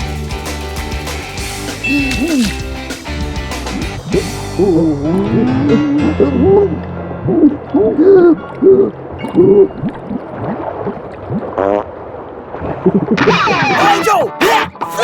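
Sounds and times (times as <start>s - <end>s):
cartoon hooting voice: 13.3s - 15.0s.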